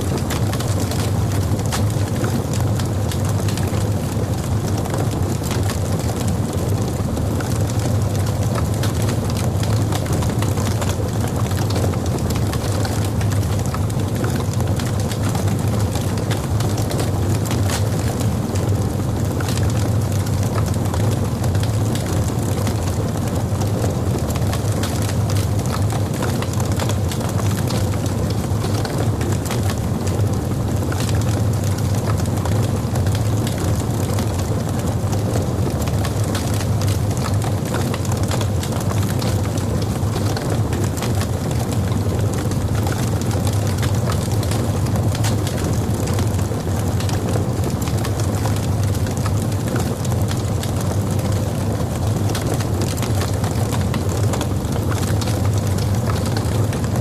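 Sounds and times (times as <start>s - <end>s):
fire crackling and popping: 0.0s - 57.0s.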